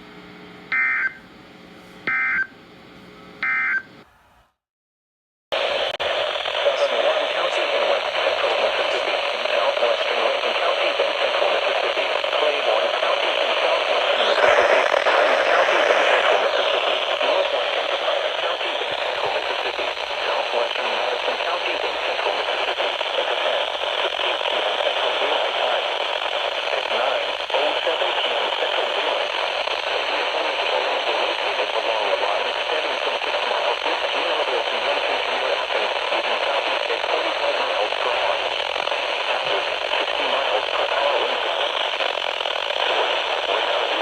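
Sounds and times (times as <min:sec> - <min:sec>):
radio static hiss: 0:05.5 - 0:44.0.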